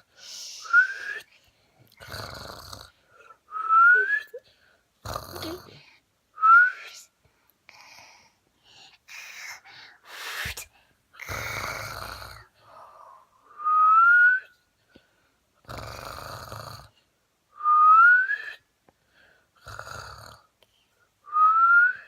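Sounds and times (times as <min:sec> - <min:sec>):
rattling snore: 0:01.9 - 0:03.0, 0:05.0 - 0:05.8, 0:11.2 - 0:12.5, 0:15.6 - 0:17.0, 0:19.6 - 0:20.5.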